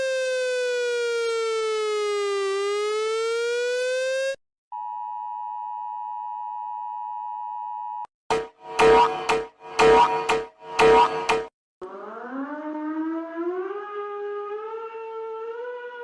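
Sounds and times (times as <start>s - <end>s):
electronic siren sliding in pitch: 0.0s - 4.4s, 8.3s - 16.0s
loud music: 8.3s - 11.5s
steady electronic alert tone: 8.3s - 11.5s.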